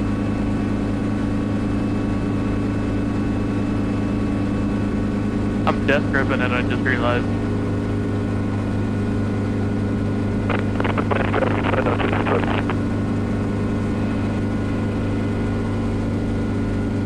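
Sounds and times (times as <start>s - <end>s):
helicopter engine and rotors droning: 0.0s - 17.0s
rustling crackling noise: 10.5s - 12.8s.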